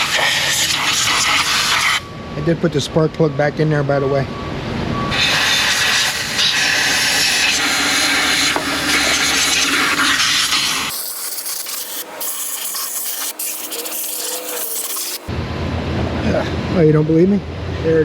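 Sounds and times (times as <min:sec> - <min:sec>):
compressed air blowgun hissing: 0:00.0 - 0:02.0, 0:05.2 - 0:15.3.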